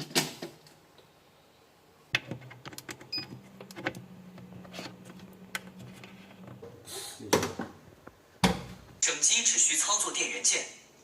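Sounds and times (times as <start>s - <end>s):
washing machine low hum: 2.3s - 9.0s.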